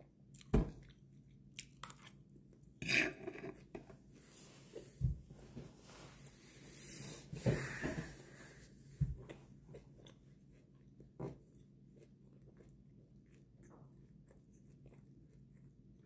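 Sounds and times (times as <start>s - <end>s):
person chewing: 0.2s - 3.9s, 9.2s - 16.0s.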